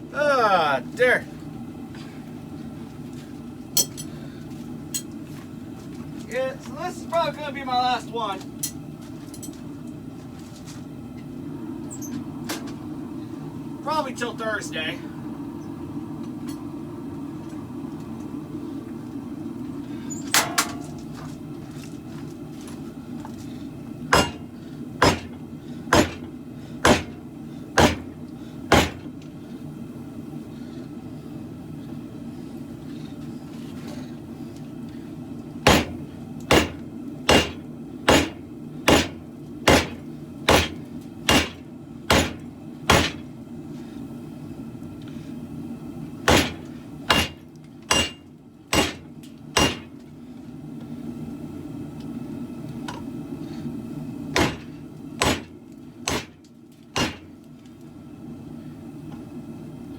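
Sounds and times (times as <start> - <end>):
steady low hum: 0.0 - 59.9
hammer striking steel on anvil: 3.8 - 4.1, 24.1 - 27.2, 27.8 - 28.1, 28.7 - 29.1, 35.7 - 43.2, 46.3 - 49.9, 54.4 - 55.5, 56.1 - 56.4, 57.0 - 57.3.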